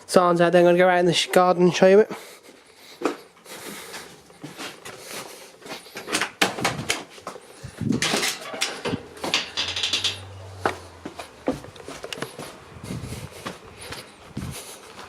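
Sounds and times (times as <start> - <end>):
knocks and clicks: 7.9 - 10.4.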